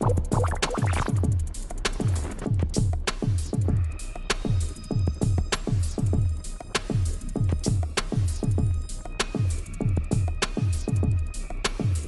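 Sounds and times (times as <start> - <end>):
electronic music: 0.0 - 1.4
hi-hat hits: 0.0 - 12.0.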